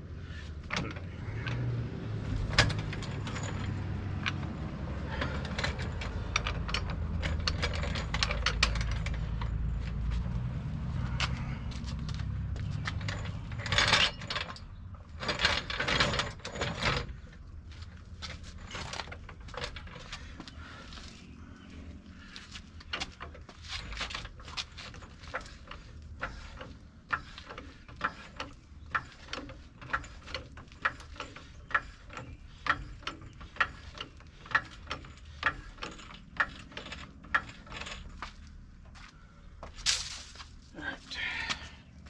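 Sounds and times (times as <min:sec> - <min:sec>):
tools clattering: 0:02.3 - 0:10.2, 0:12.6 - 0:17.2, 0:22.3 - 0:40.6.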